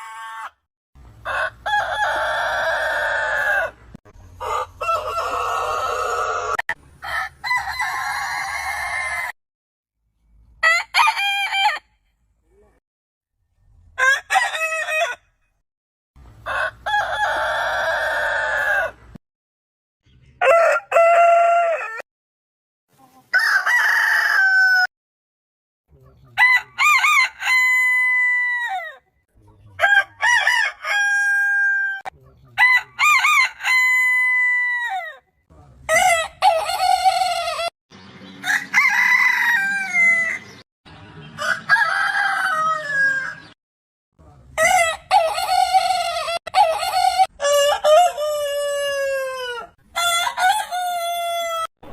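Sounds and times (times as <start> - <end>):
roosters crowing: 0.0 - 0.6, 1.2 - 9.4, 10.6 - 12.0, 14.0 - 15.4, 16.3 - 19.2, 20.4 - 22.0, 23.3 - 24.9, 26.4 - 29.0, 29.8 - 35.2, 35.9 - 37.7, 38.3 - 40.6, 41.2 - 43.6, 44.6 - 51.9.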